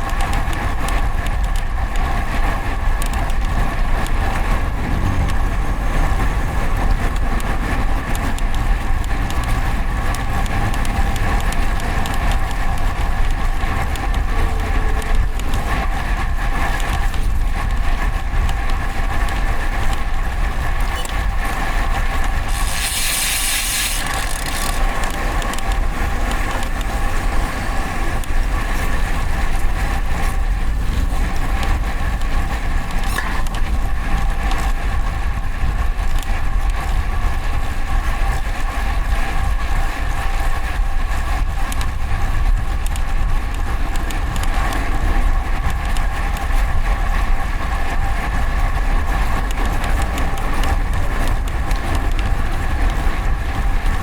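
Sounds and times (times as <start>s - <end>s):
traffic noise: 0.0s - 54.0s
wind rushing over microphone: 0.0s - 54.0s
short hiss: 22.5s - 24.1s.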